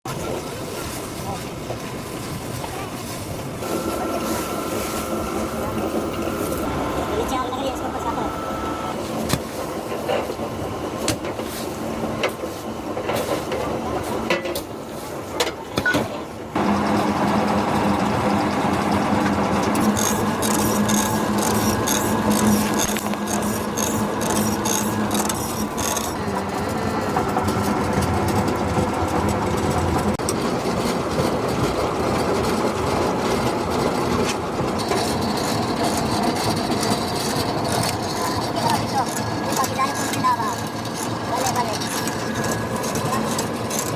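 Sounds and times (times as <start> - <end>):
machinery rasping and rubbing: 3.5 - 12.1, 16.6 - 43.9
steady machine hum: 3.6 - 11.1, 16.5 - 43.9.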